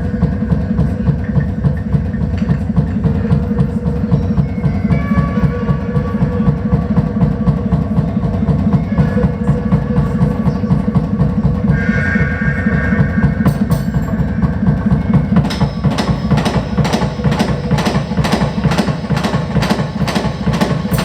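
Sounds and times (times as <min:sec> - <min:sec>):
low pulsing noise rhythm: 0:00.0 - 0:21.0
steady held tone: 0:11.7 - 0:21.0.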